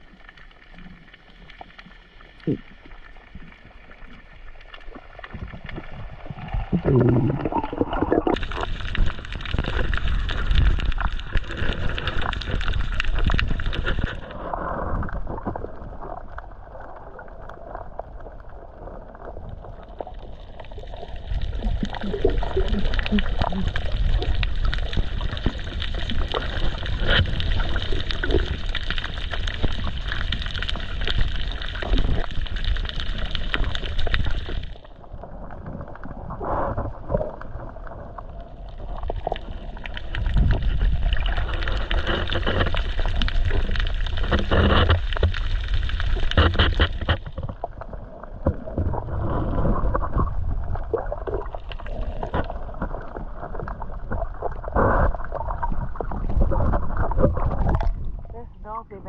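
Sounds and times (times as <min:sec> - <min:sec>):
water sloshing and gurgling: 0:00.0 - 0:59.0
low rumble: 0:06.0 - 0:16.0.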